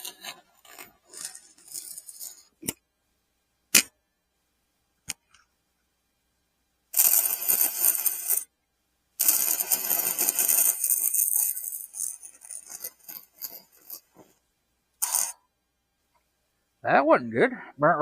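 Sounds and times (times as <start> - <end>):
arc welder crackling: 0.0 - 2.8, 7.0 - 8.5, 9.2 - 14.4, 15.0 - 15.4.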